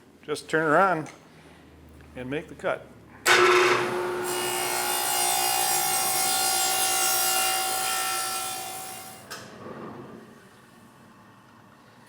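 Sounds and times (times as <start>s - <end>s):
table saw cutting wood: 3.3s - 9.3s.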